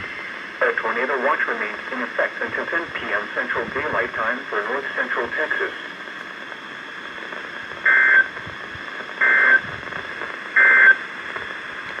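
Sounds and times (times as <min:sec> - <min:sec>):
steady radio hiss: 0:00.0 - 0:12.0
digital data tone bursts: 0:07.9 - 0:08.3, 0:09.2 - 0:09.6.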